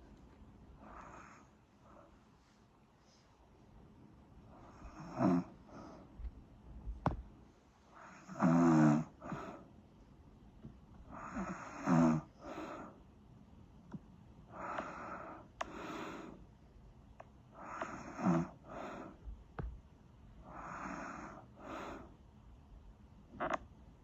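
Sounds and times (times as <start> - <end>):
person snoring: 4.7 - 6.0, 8.0 - 9.6, 11.1 - 12.9, 17.6 - 19.2, 20.5 - 22.1.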